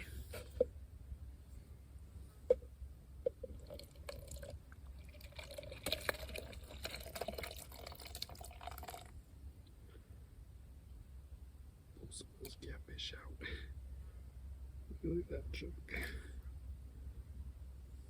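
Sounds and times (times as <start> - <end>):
thick liquid pouring and splashing: 3.4 - 9.1.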